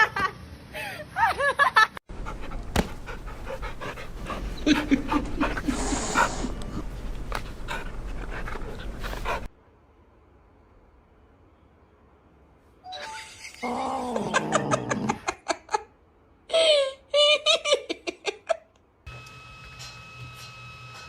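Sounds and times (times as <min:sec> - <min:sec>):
dog panting: 0:02.1 - 0:09.5.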